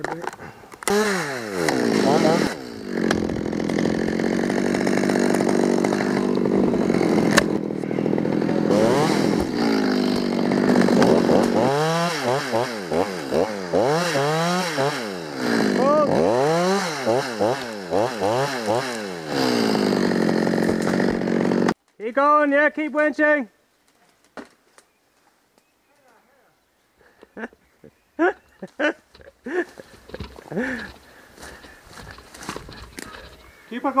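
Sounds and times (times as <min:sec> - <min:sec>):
chainsaw revving: 0:00.8 - 0:21.8, 0:29.5 - 0:33.4.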